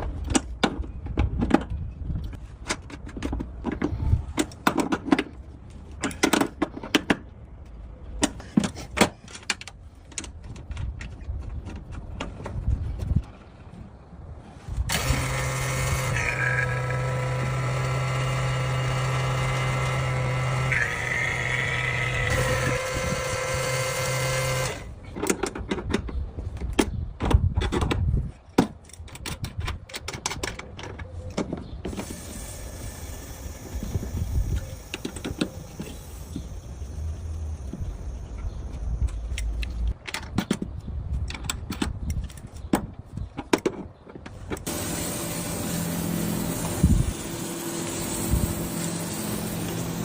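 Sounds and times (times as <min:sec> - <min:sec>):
tool handling clicks and knocks: 0:00.0 - 0:13.4, 0:25.0 - 0:32.1, 0:37.7 - 0:44.7
vacuum pump running: 0:14.9 - 0:24.8, 0:44.7 - 0:50.0.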